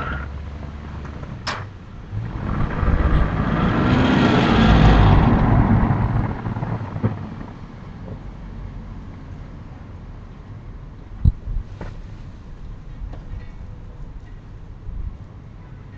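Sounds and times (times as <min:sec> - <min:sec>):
vehicle passing by: 0:01.8 - 0:08.1.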